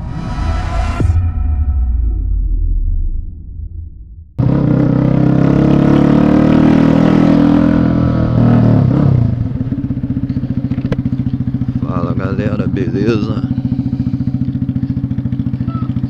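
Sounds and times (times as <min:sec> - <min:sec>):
low rumble: 0:00.0 - 0:04.8, 0:07.6 - 0:15.2
motorcycle engine running: 0:04.4 - 0:16.0.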